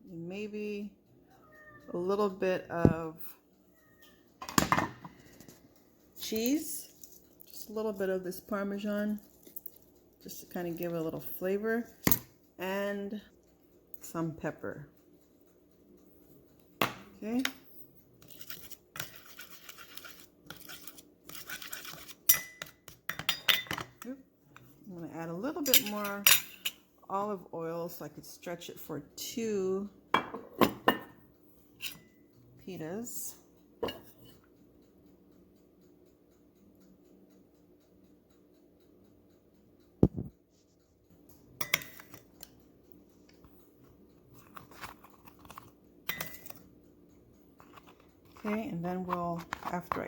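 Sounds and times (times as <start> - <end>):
utensils scraping and rustling: 18.2 - 23.7, 44.3 - 46.6, 47.6 - 50.0
utensil clatter with ring: 18.3 - 24.1, 25.6 - 26.8, 30.1 - 32.3, 33.8 - 34.4, 41.6 - 42.6, 44.3 - 46.7
dishes clinking: 22.3 - 24.0, 30.2 - 31.2, 33.8 - 34.3, 41.6 - 42.2, 46.1 - 46.6.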